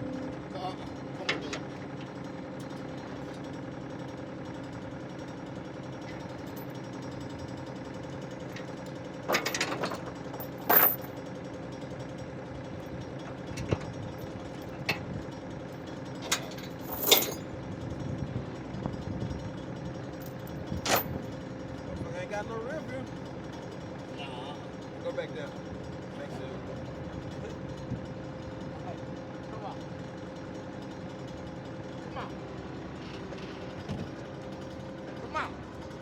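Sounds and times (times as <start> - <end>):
diesel engine running: 0.0 - 36.0
metal clanks and bangs: 9.3 - 11.1.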